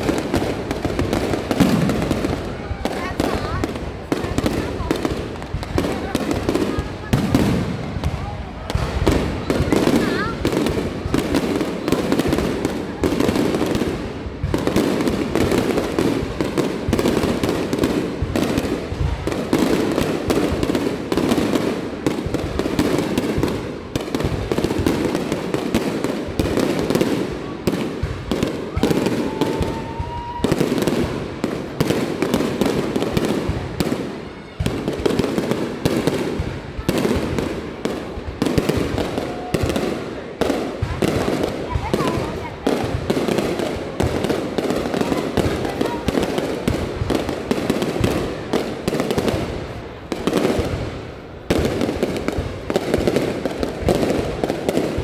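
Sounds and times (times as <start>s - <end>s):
fireworks bangs and crackles: 0.0s - 55.0s
rising firework whistle: 28.5s - 31.2s.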